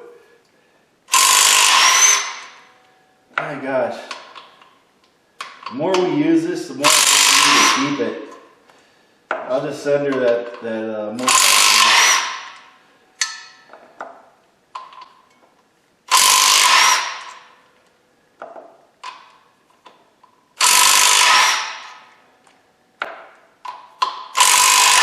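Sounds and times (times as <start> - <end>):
impact wrench spinning bolts: 1.1 - 2.7, 6.8 - 8.0, 11.2 - 13.7, 16.1 - 17.6, 20.6 - 22.2, 23.0 - 25.0.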